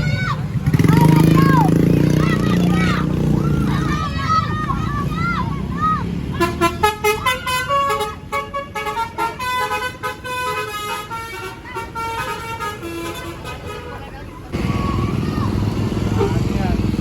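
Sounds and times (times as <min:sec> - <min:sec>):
low traffic rumble: 0:00.0 - 0:17.0
bus horn playing a melody: 0:06.4 - 0:14.1.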